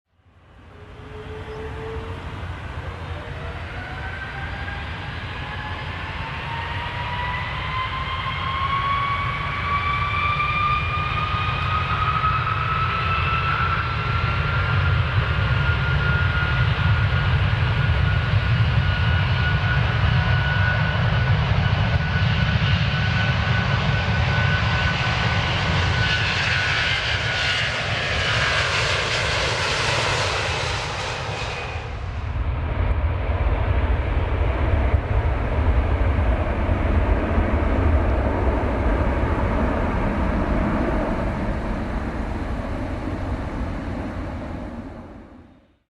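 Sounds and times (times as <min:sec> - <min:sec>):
airplane engines whining: 0:00.2 - 0:45.8.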